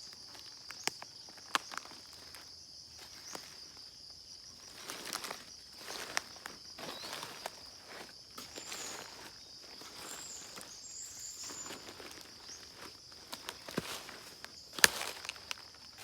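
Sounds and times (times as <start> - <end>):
insect trill: 0.0 - 16.0
soft footsteps: 4.6 - 16.0
faint bird chirps: 6.8 - 7.3, 8.5 - 12.7.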